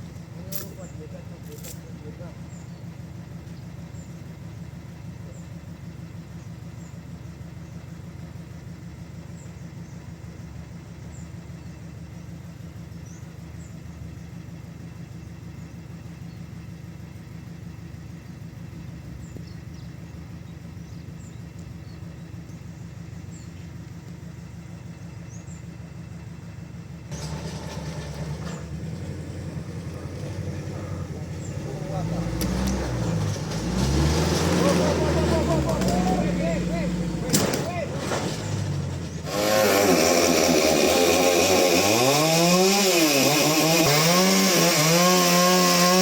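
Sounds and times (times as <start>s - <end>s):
sawmill machinery drone: 0.0s - 46.0s.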